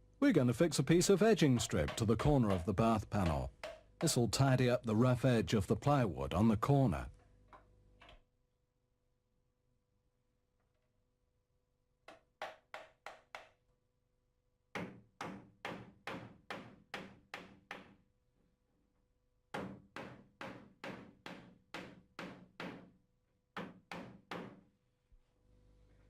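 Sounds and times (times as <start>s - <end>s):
hammer tapping nails into wood: 1.6s - 4.1s.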